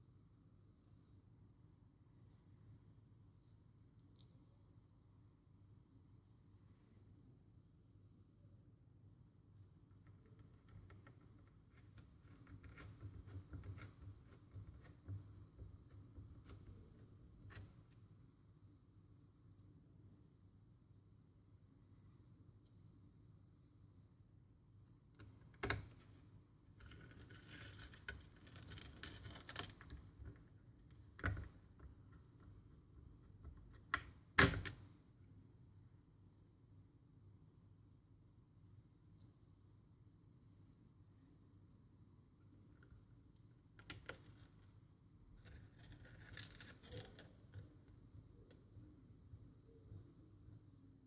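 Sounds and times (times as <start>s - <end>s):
scratchy scraping: 45.4s - 47.8s.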